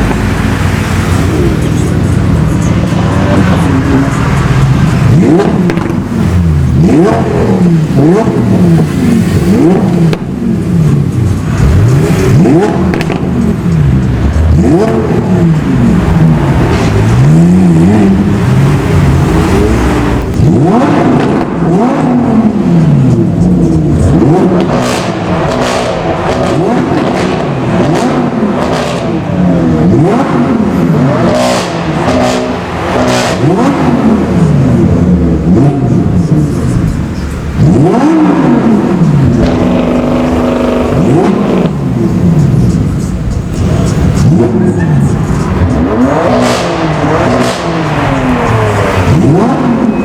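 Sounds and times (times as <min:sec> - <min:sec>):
exhaust pops: 0:00.0 - 0:17.2
car engines accelerating and revving: 0:00.0 - 0:50.0.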